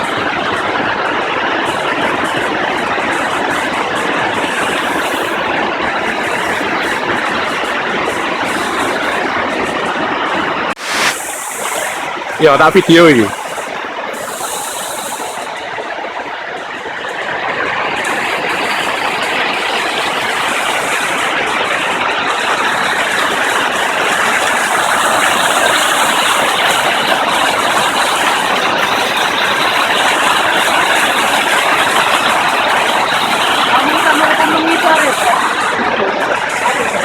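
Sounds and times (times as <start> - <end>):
waterfall rushing: 0.0 - 37.0.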